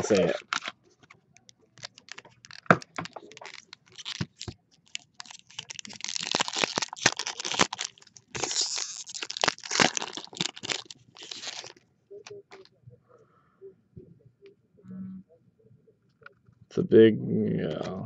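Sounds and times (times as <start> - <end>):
packaging being torn and crinkled: 0.1 - 0.8, 1.8 - 11.8.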